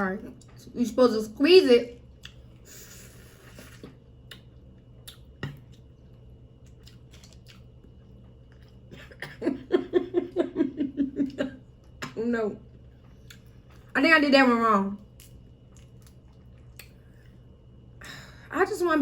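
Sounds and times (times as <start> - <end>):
chewing close to microphone: 6.6 - 8.9, 15.2 - 17.4.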